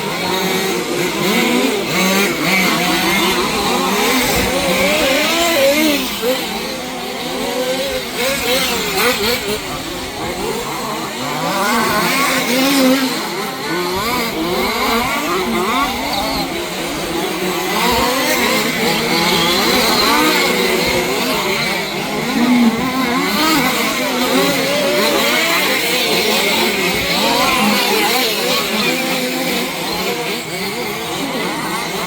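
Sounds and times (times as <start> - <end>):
rc car engines revving: 0.0 - 32.0.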